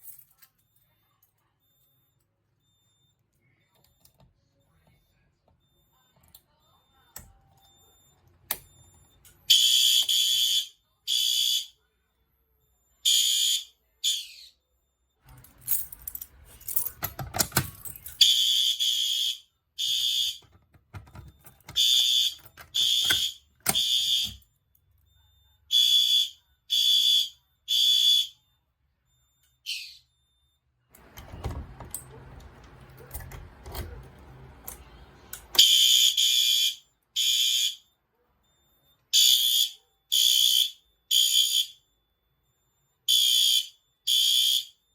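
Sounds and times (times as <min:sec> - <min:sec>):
fire alarm horn blasts: 0:07.6 - 0:11.9, 0:12.8 - 0:14.5, 0:18.2 - 0:20.5, 0:21.7 - 0:31.2, 0:34.8 - 0:44.9.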